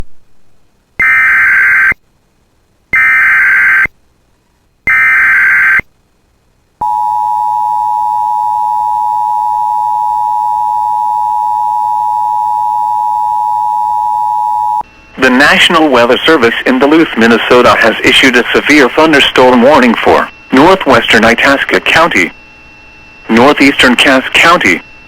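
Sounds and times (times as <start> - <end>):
steady attention tone: 6.8 - 25.0.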